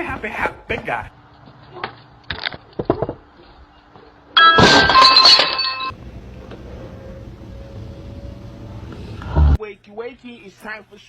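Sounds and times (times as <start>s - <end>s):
loud crash with clinking: 4.4s - 5.9s.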